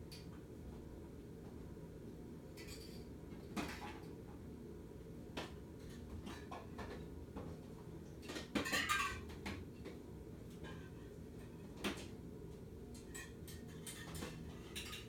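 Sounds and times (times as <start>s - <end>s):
ceiling fan humming: 0.0s - 15.0s
fan clatter: 12.9s - 15.0s.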